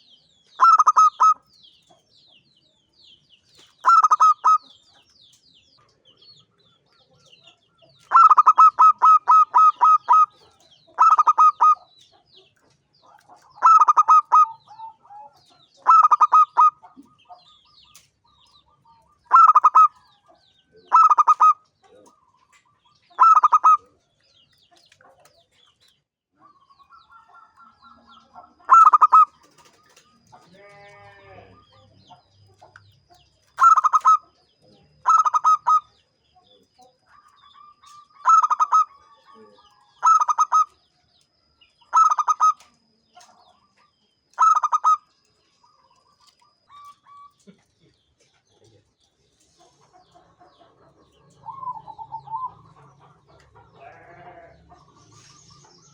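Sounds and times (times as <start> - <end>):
dove cooing: 0.6 - 1.4, 3.8 - 4.8, 8.0 - 11.9, 13.1 - 17.2, 19.2 - 20.2, 20.8 - 22.6, 23.2 - 24.0, 28.6 - 32.7, 33.5 - 34.4, 35.0 - 35.9, 37.1 - 40.8, 44.4 - 45.0, 51.2 - 54.2
soft bird trilling: 0.6 - 1.4, 3.8 - 4.7, 13.6 - 16.9, 33.5 - 34.4, 40.0 - 40.8, 44.3 - 47.4.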